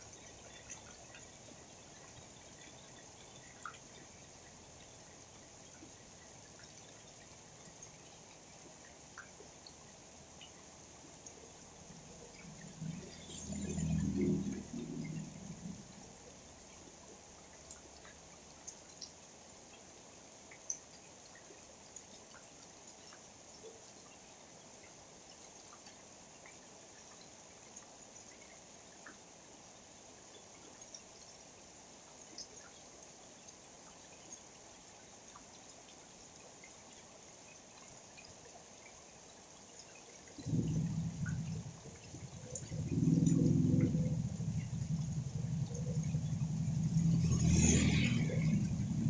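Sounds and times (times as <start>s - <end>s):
raindrops ticking: 0.0s - 29.2s, 35.3s - 49.0s
faint rain hiss: 0.0s - 49.0s
loud low hum: 40.4s - 49.0s.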